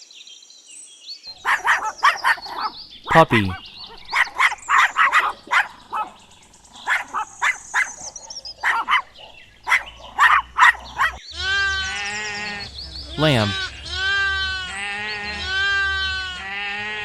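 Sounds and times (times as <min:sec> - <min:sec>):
puppy barking and yipping: 0:01.4 - 0:02.7, 0:03.9 - 0:06.2, 0:06.8 - 0:11.2.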